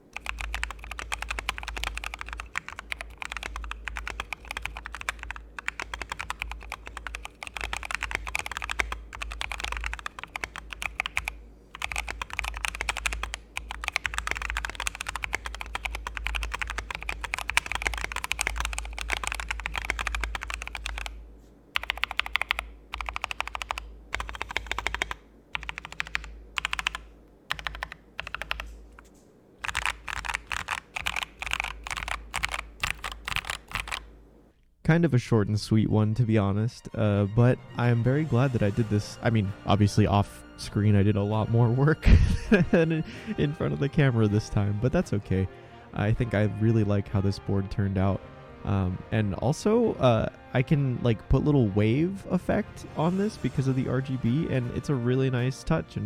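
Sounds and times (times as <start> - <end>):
fast typing on mechanical keyboard: 0.1 - 21.2, 21.8 - 28.7, 29.6 - 34.1.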